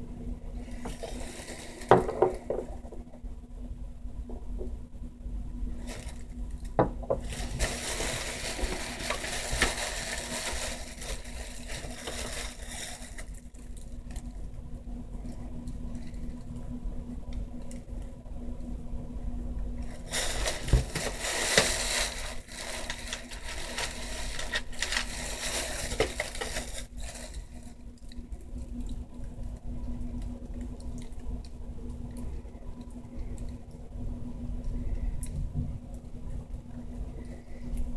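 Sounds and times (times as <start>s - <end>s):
steady low hum: 0.0s - 37.9s.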